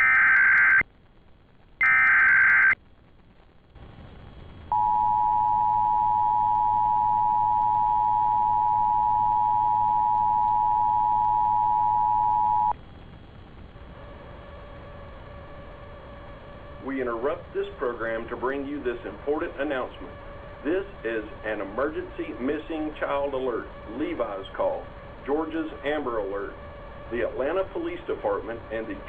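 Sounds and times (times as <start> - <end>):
harsh data bursts: 0.0 - 0.8, 1.8 - 2.8, 16.6 - 29.0
two-tone attention signal: 4.7 - 12.7
faint hiss: 12.8 - 29.0.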